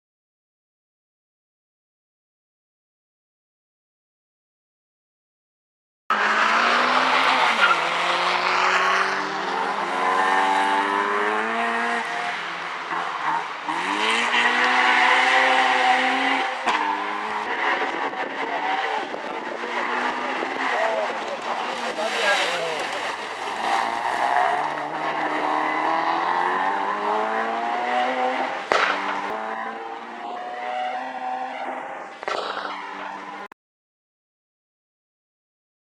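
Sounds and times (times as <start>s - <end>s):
car engine revving: 6.1s - 33.5s
exhaust backfire pops: 28.7s - 29.4s, 32.2s - 33.2s.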